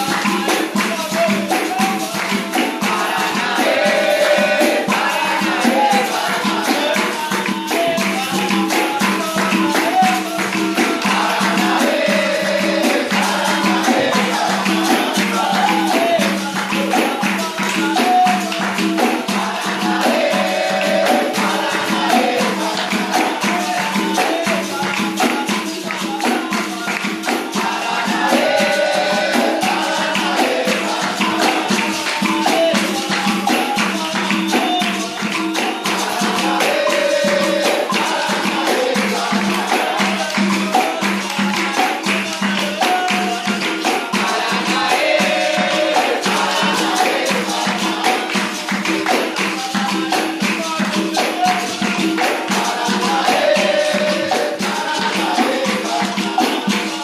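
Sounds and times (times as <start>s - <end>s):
shaker rattles: 0.0s - 57.0s
tambourine rhythm: 0.0s - 57.0s
person singing: 35.9s - 57.0s.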